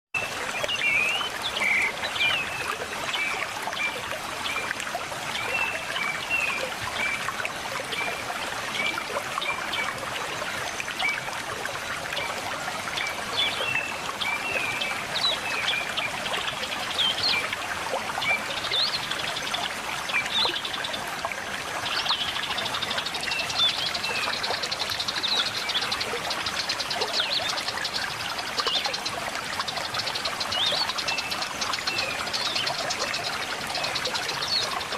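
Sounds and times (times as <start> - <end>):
river trickling: 0.2 - 34.9.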